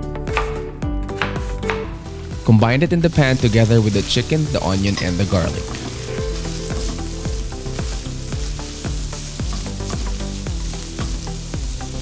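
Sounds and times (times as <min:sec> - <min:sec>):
vegetables sizzling in a frying pan: 0:03.1 - 0:12.0.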